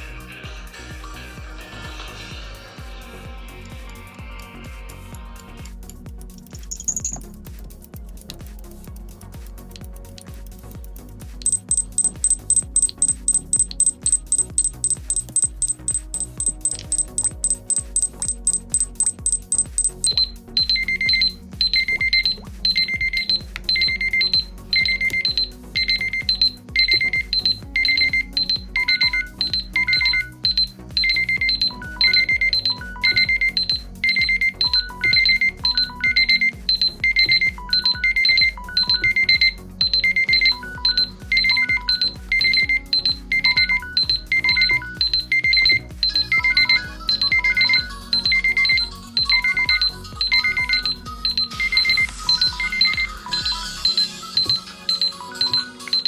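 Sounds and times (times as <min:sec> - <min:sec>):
fast electronic beeping: 0:06.6 - 0:07.3, 0:11.4 - 0:56.0
melodic ringtone phrase: 0:16.4 - 0:56.0.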